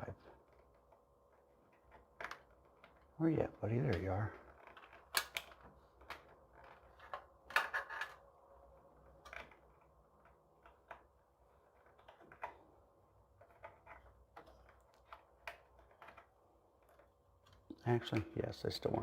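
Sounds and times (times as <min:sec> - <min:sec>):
plastic connectors clicking and rattling: 0:04.5 - 0:08.2.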